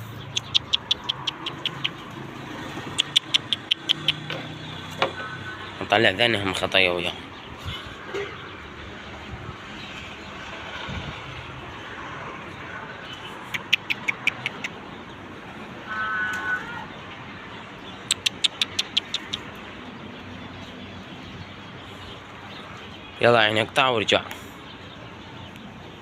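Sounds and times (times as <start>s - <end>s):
outdoor background noise: 0.0s - 26.0s
sharp clicks: 2.9s - 4.5s, 13.5s - 14.8s, 18.0s - 19.6s.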